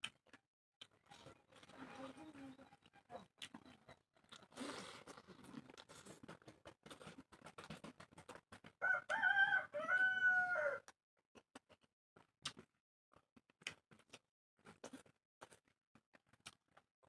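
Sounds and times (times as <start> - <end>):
rooster crowing: 8.8 - 10.8.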